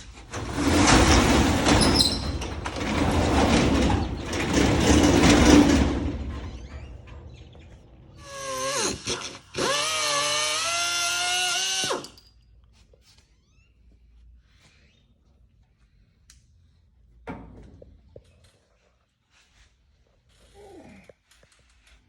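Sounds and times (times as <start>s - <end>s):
power tool motor whirring: 8.2s - 12.2s
power tool working noise: 8.2s - 12.2s.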